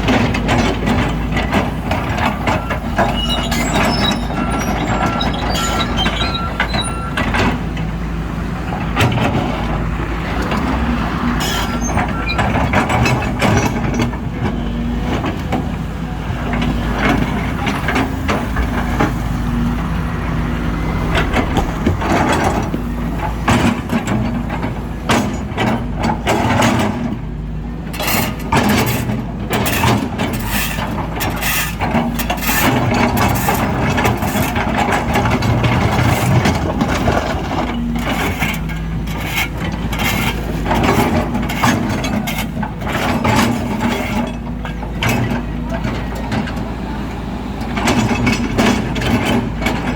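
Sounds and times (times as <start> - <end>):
excavator diesel engine running: 0.0 - 49.9
bucket scraping up asphalt: 18.2 - 23.8.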